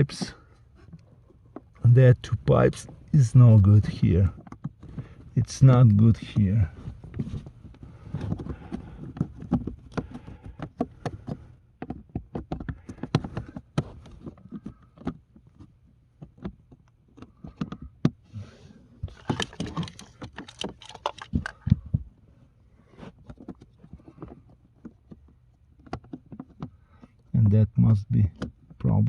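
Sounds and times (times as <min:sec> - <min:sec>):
plastic clattering and rustling: 0:00.0 - 0:29.0
plastic parts clicking and tapping: 0:07.1 - 0:18.2, 0:19.0 - 0:22.1, 0:23.2 - 0:29.0.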